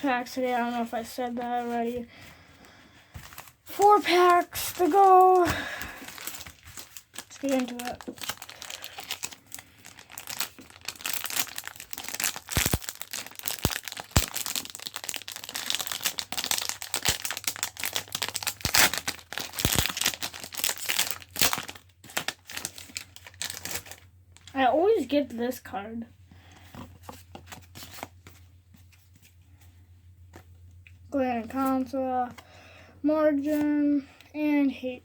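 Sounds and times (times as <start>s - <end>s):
foil wrapper crinkling and tearing: 3.3s - 24.6s.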